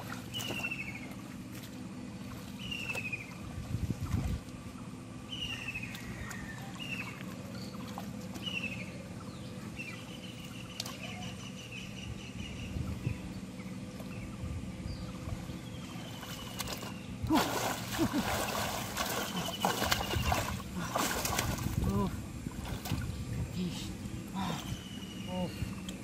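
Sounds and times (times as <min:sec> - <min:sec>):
low motor drone: 0:00.0 - 0:26.0
birds chirping: 0:00.1 - 0:01.4, 0:02.2 - 0:22.2, 0:23.0 - 0:26.0
bird trill: 0:05.3 - 0:07.8, 0:24.7 - 0:25.5.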